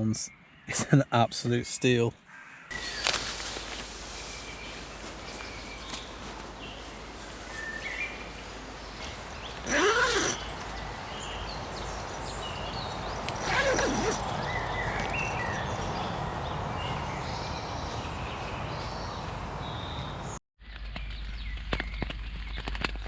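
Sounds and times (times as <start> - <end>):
small birds chirping: 2.7 - 20.4.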